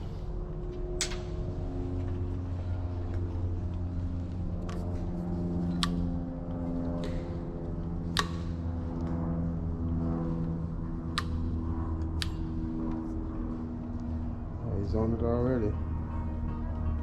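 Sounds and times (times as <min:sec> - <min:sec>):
sustained music chords: 0:15.4 - 0:17.0.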